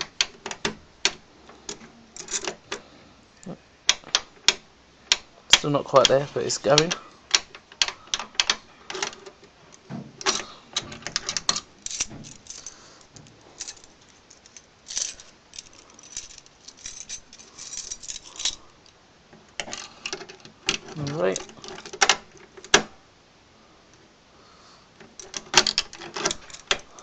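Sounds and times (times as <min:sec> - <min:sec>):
key clicking and scraping in lock: 0:00.0 - 0:02.8, 0:05.6 - 0:19.0, 0:19.6 - 0:22.8, 0:25.0 - 0:27.0
keys jangling: 0:01.7 - 0:02.6, 0:10.2 - 0:18.9, 0:25.2 - 0:27.0.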